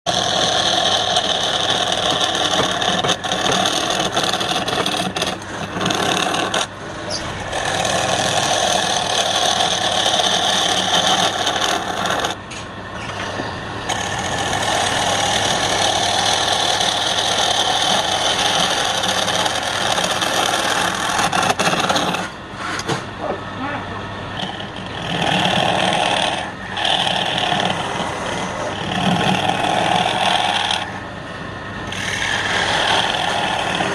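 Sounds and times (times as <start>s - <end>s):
wood lathe scraping hiss: 0.1s - 12.4s, 13.9s - 22.8s, 24.3s - 31.0s, 31.8s - 33.9s.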